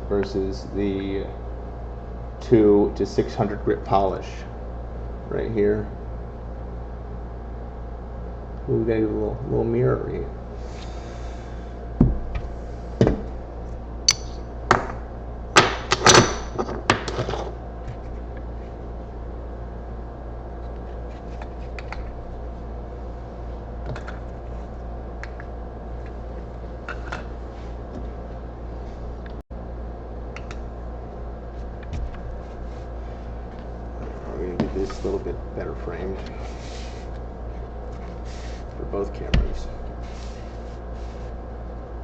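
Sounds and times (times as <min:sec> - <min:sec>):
steady low hum: 0:00.0 - 0:42.0
hard objects knocking and clicking: 0:15.6 - 0:17.5.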